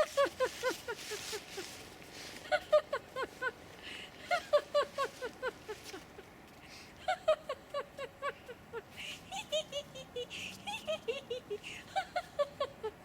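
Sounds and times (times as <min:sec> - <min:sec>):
high-pitched laughter: 0:00.0 - 0:01.8, 0:02.4 - 0:03.6, 0:04.2 - 0:06.3, 0:07.0 - 0:13.0.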